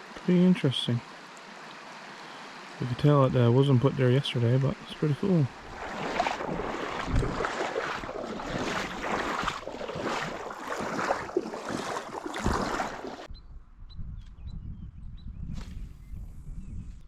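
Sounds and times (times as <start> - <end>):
water rushing and splashing: 0.0 - 13.3.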